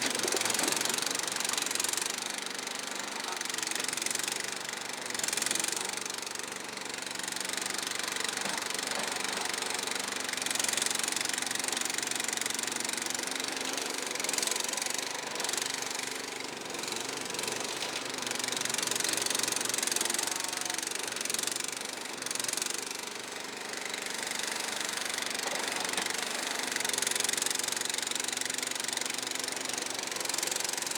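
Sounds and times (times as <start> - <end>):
bulldozer engine running: 0.0 - 2.2.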